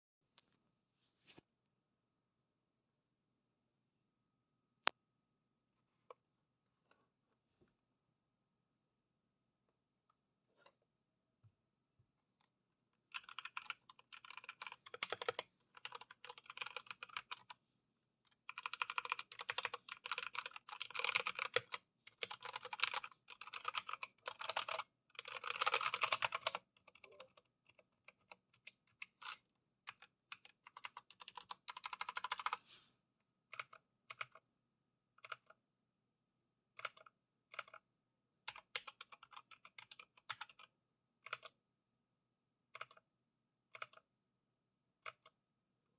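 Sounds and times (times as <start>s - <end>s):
mechanical keyboard typing: 13.1s - 17.5s, 18.4s - 32.6s, 38.5s - 40.7s.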